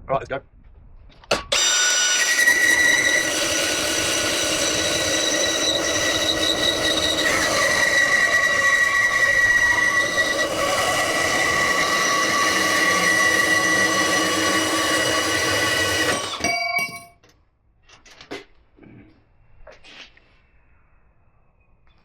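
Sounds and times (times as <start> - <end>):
bandsaw cutting steel: 1.3 - 17.1.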